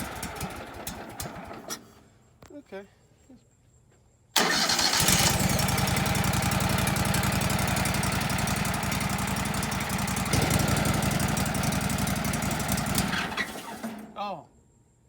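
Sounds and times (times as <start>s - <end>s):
small gasoline engine running: 0.0s - 1.8s, 4.4s - 14.2s.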